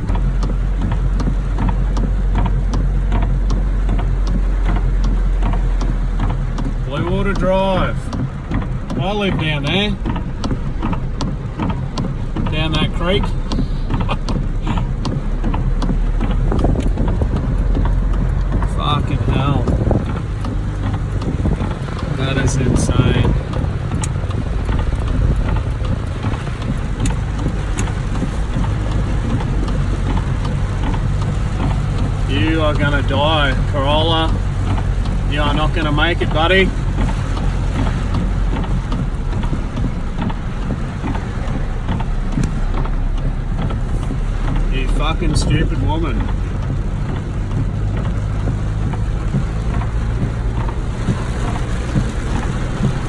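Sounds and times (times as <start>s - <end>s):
vehicle engine and road rumble: 0.0s - 53.0s
wind noise on microphone: 15.9s - 32.5s.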